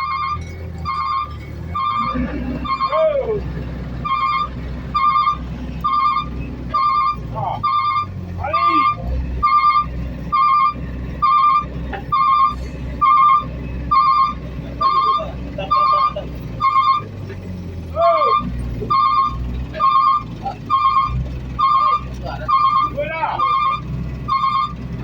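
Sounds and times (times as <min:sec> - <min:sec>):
backup alarm beeping: 0:00.0 - 0:03.4, 0:04.0 - 0:17.2, 0:18.2 - 0:24.8
engine rumble: 0:00.0 - 0:25.0.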